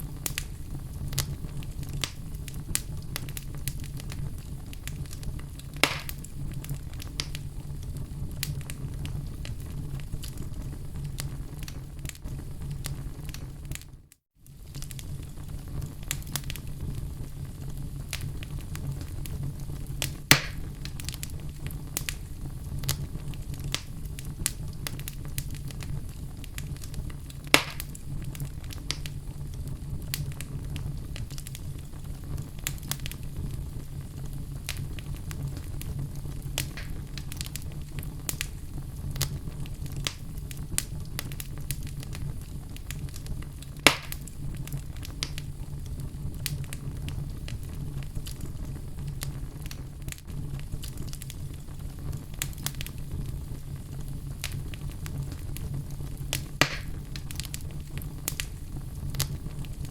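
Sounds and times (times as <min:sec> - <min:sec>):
fire crackling: 0:00.0 - 0:59.9
sharp loud pops: 0:05.8 - 0:06.2, 0:20.3 - 0:20.6, 0:27.6 - 0:27.8, 0:56.6 - 0:57.0.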